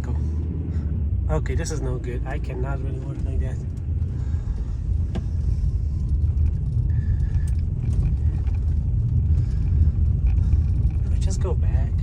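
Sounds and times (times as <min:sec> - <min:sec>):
car driving rumble: 0:00.0 - 0:12.0.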